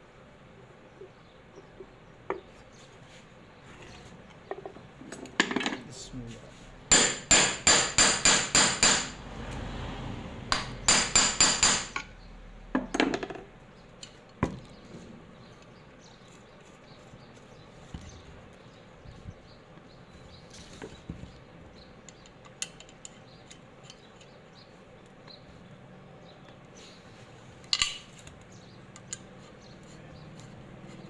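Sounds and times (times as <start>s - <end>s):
hammer striking metal: 6.9s - 9.2s, 10.5s - 12.1s.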